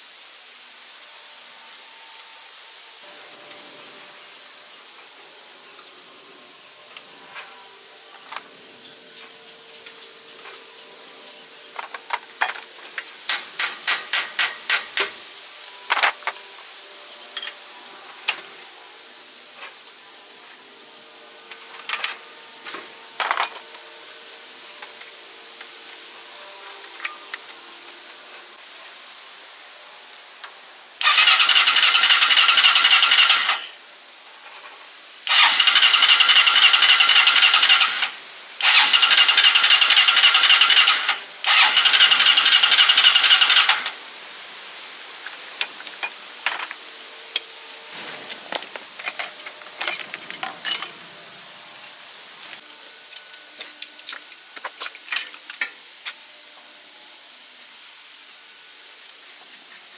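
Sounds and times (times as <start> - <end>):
loud machine noise bursts: 31.0 - 33.8, 35.3 - 44.0.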